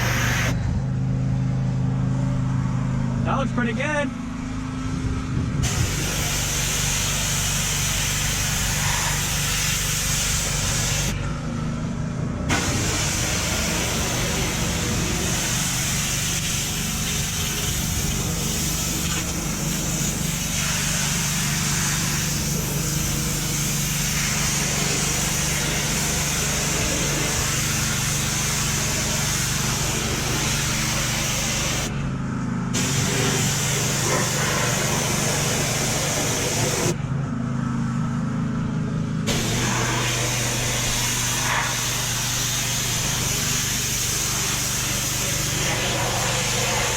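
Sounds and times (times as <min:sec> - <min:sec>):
high-pressure spray hissing: 0:00.0 - 0:00.6, 0:05.6 - 0:11.2, 0:12.5 - 0:31.9, 0:32.8 - 0:37.0, 0:39.3 - 0:46.9
pressure washer motor hum: 0:00.0 - 0:46.9.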